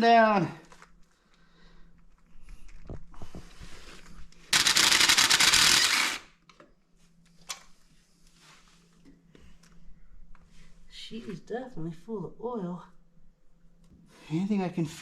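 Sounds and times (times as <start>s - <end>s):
ratchet wrench clicking: 4.6s - 6.2s.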